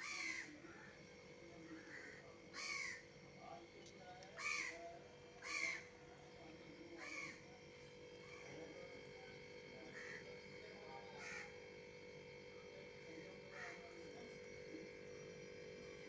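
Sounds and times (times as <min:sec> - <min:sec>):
crows cawing: 0:00.0 - 0:01.0, 0:01.7 - 0:03.1, 0:04.4 - 0:05.9, 0:07.0 - 0:07.4, 0:09.9 - 0:10.3, 0:11.2 - 0:11.6, 0:13.5 - 0:13.9
faint steady hum: 0:00.0 - 0:16.0.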